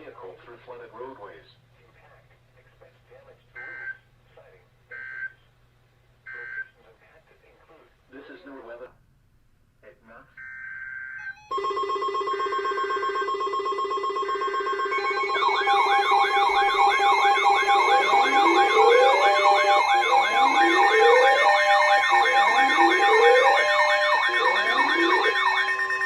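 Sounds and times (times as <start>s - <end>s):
steady alarm tone: 10.4s - 26.0s
warbling siren wail: 10.4s - 26.0s.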